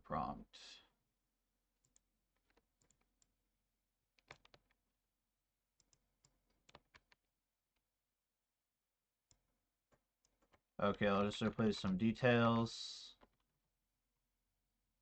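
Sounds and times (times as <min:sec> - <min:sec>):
mouse and keyboard clicks: 0:04.2 - 0:04.8.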